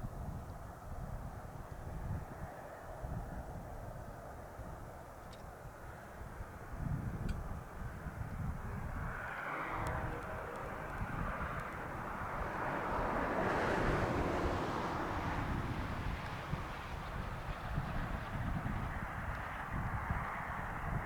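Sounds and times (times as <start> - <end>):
diesel locomotive droning: 9.6 - 19.2.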